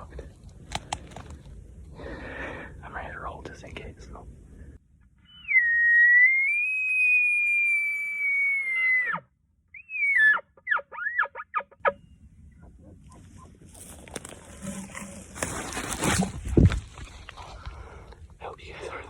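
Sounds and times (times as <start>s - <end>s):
elk bugling whistle: 5.2s - 12.2s.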